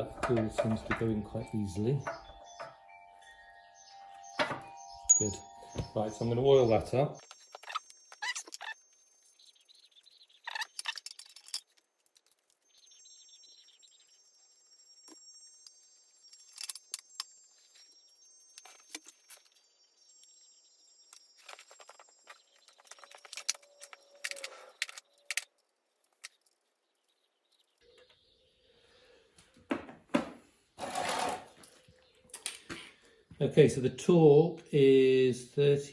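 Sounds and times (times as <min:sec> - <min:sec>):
metal tools clinking: 0:00.0 - 0:08.8, 0:10.5 - 0:12.4, 0:21.1 - 0:25.6.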